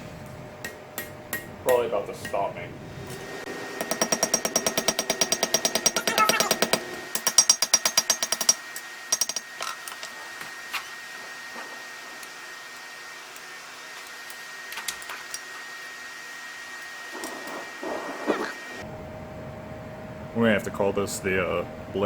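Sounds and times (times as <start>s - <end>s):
hammer blows on steel anvil: 0.6s - 2.7s, 3.8s - 8.6s.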